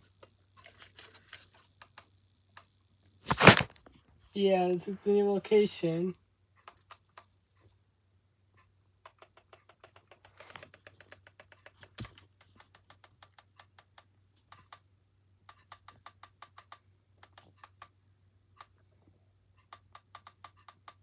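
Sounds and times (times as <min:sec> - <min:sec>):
typing on keyboard: 0:09.0 - 0:14.8.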